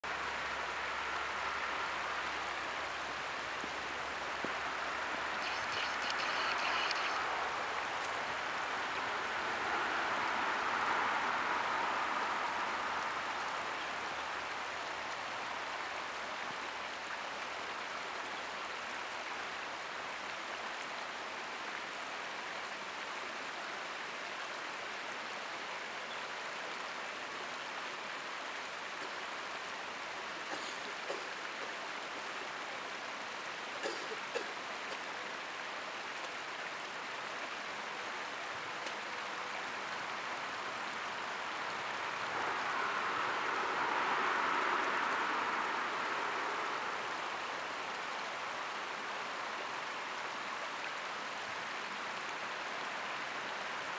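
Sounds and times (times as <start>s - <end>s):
creek water rushing: 0.0s - 53.9s
faint clicks: 5.4s - 7.2s.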